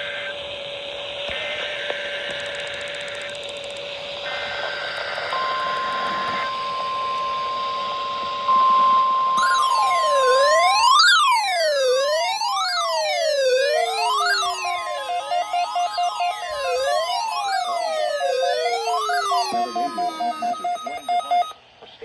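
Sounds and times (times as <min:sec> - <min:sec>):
static hiss: 0:00.0 - 0:09.4
steady warning alarm tone: 0:02.3 - 0:21.6
sweeping siren-like alert: 0:05.3 - 0:21.6.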